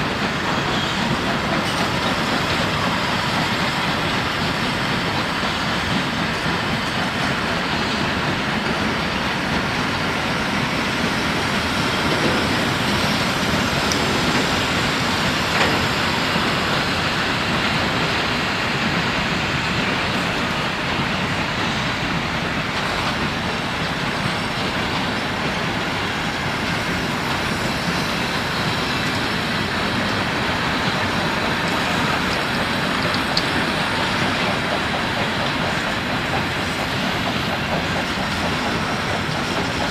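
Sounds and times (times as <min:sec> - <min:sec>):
train wheels rumbling on track: 0:00.0 - 0:39.9.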